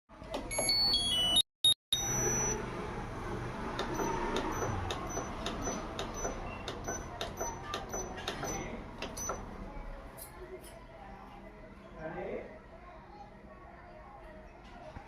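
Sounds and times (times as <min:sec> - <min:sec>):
electronic beep tune: 0:00.5 - 0:02.6, 0:03.8 - 0:09.4
washing machine rumbling: 0:02.0 - 0:09.5
regular clicks: 0:03.8 - 0:09.4.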